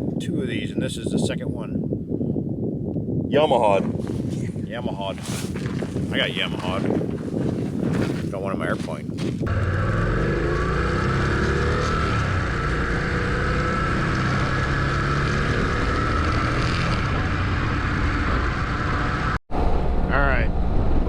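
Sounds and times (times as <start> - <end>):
wind noise: 0.0 - 9.6, 10.4 - 21.0
motorcycle engine running: 9.2 - 19.4.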